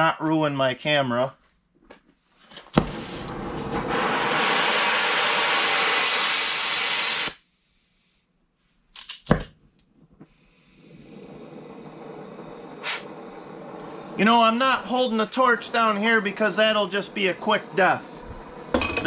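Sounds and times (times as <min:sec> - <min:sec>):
quiet steady air hiss: 0:09.6 - 0:19.0.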